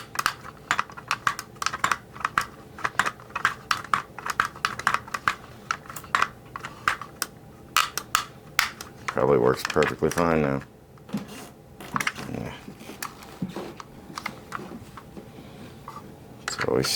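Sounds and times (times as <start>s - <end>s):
plastic toy clicking: 0.0s - 10.3s.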